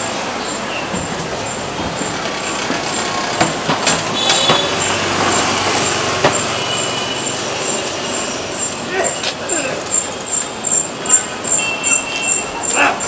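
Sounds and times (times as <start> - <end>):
busy market street ambience: 0.0 - 13.0
sharp knocks and clacks: 0.8 - 7.8
high squeak: 4.2 - 13.0.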